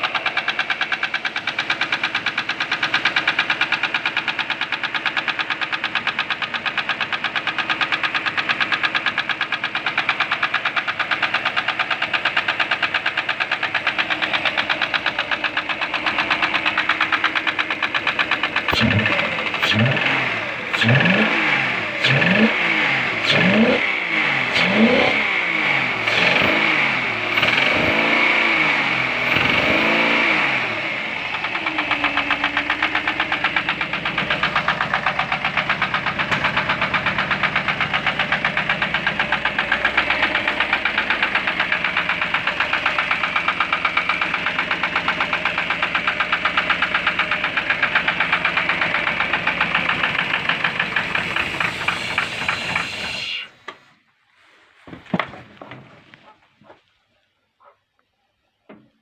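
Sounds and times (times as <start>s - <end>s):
engine idling with knock: 0.0s - 53.9s, 54.9s - 56.4s
car engine revving: 6.7s - 53.6s.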